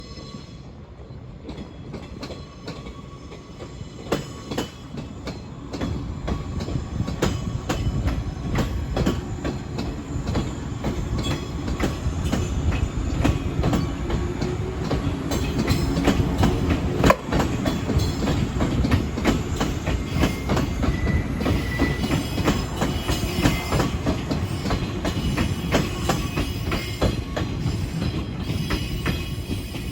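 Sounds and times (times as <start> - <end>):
train wheels clicking over rail joints: 1.4 - 29.9
wheel squeal: 20.1 - 24.0.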